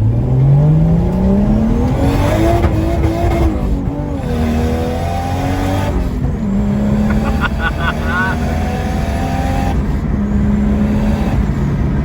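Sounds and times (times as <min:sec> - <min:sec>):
car engine accelerating: 0:00.0 - 0:12.0.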